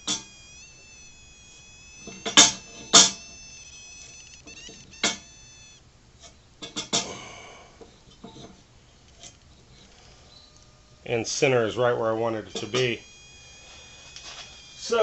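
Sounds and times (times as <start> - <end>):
brief ringing tone: 0.0 - 5.8, 10.3 - 15.0.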